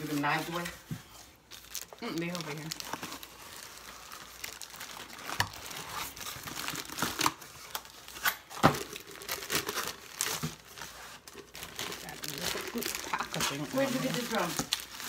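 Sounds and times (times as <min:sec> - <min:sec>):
packaging crinkling: 0:00.0 - 0:15.0.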